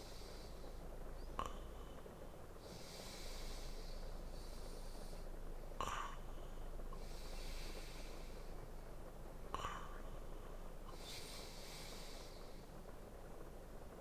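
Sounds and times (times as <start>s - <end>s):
man breathing in sleep: 2.6s - 6.3s, 6.9s - 8.8s, 10.9s - 12.9s.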